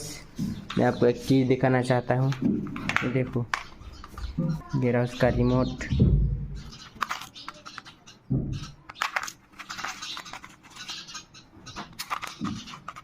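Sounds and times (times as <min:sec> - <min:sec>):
plastic clicks and scrapes: 0:06.7 - 0:13.0.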